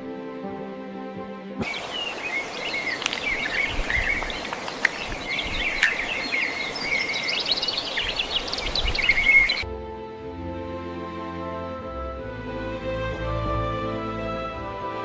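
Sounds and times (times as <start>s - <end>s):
birds chirping in chorus: 1.6s - 9.6s
sharp clicks: 2.6s - 6.5s.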